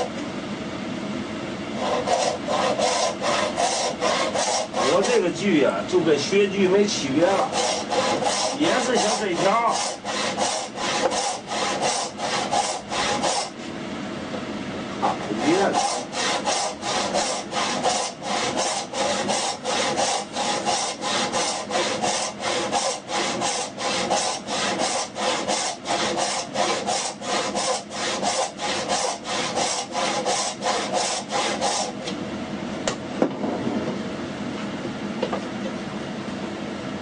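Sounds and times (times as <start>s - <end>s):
hand saw cutting wood: 1.8s - 5.3s, 7.3s - 13.6s, 15.0s - 32.1s.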